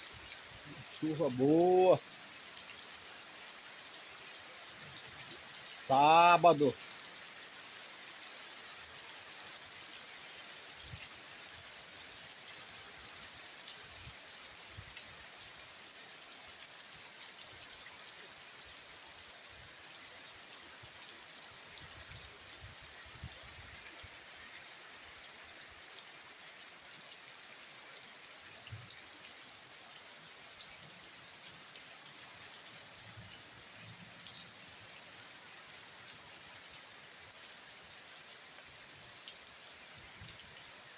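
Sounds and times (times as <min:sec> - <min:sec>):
heavy rain hissing: 0:00.5 - 0:02.2, 0:04.6 - 0:07.1.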